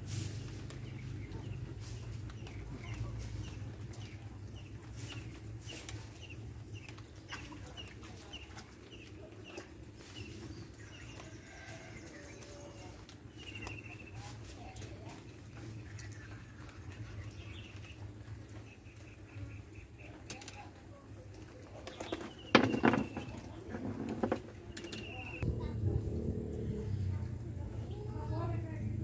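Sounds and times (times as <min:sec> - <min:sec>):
steady low hum: 0:23.0 - 0:29.0.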